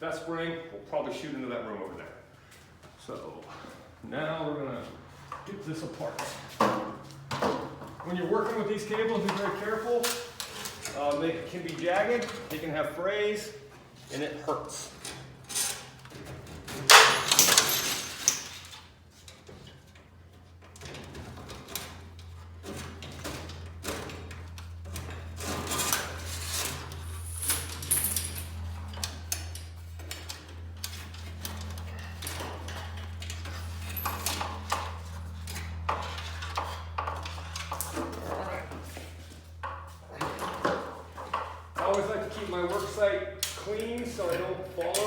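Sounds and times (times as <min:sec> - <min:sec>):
metal hardware clanking: 0:16.7 - 0:18.7.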